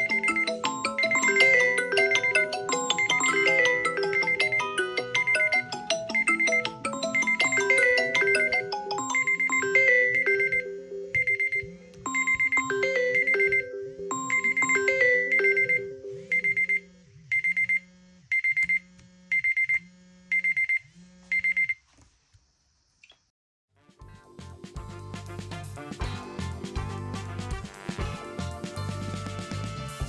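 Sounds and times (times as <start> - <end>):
mallet-like ringtone melody: 0.0 - 16.1.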